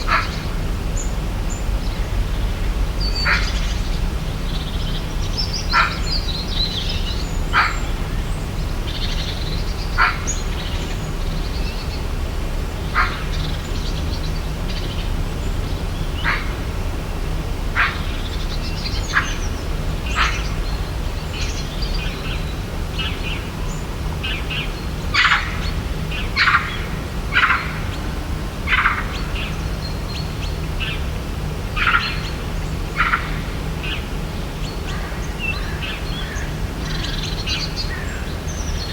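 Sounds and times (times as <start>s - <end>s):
birds chirping: 0.0s - 38.9s
low background rumble: 0.0s - 38.9s.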